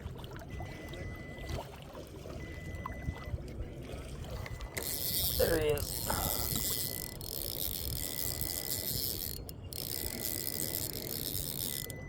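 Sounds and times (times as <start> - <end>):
fishing reel ratcheting: 4.8 - 12.0.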